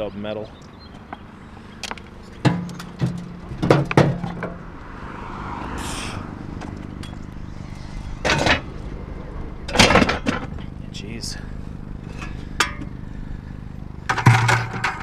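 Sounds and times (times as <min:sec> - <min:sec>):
sharp knocks and thunks: 0:02.4 - 0:04.6
low steady hum: 0:05.9 - 0:15.0.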